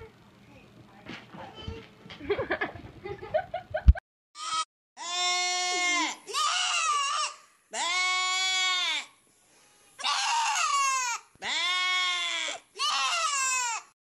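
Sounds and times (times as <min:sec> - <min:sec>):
goat bleating: 0:04.4 - 0:09.1, 0:10.0 - 0:13.9.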